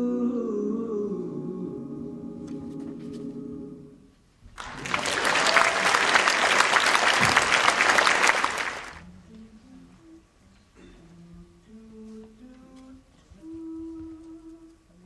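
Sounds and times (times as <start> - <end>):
vocal group holding a chord: 0.0 - 4.0
audience applauding: 4.6 - 9.0.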